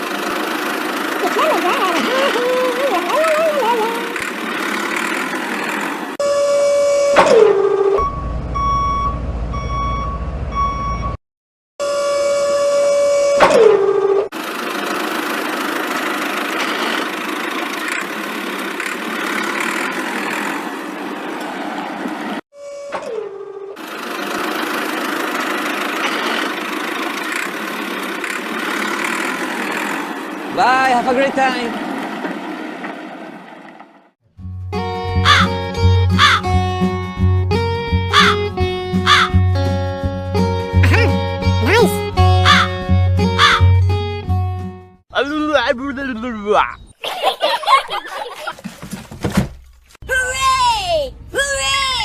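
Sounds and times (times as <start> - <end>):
cartoon vehicle engine running: 0.0 - 8.4, 11.9 - 34.2, 40.8 - 43.8
vehicle reversing beeper: 6.2 - 11.2.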